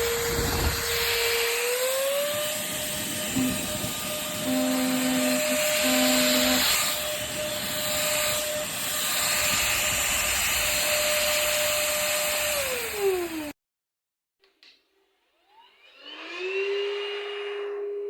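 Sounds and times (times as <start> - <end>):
airflow hiss: 0.0 - 13.5
vacuum motor whining: 0.0 - 13.6, 15.4 - 18.0.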